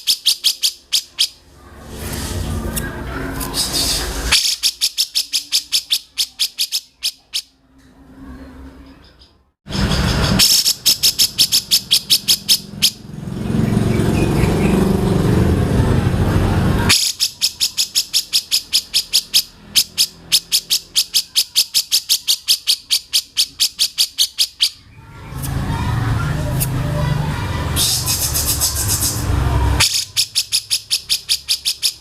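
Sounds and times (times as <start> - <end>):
bird rapid high call: 0.0 - 1.4, 3.4 - 7.5, 9.7 - 13.0, 16.9 - 25.5, 27.7 - 32.0.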